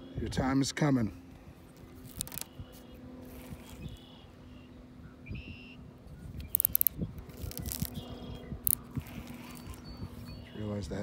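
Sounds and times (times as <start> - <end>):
sharp clicks: 2.1 - 2.6, 6.4 - 10.3.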